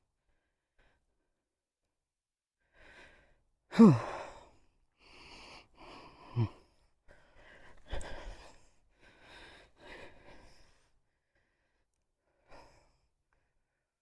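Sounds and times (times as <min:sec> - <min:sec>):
person breathing hard: 0:02.7 - 0:13.6
person sighing: 0:03.7 - 0:04.4.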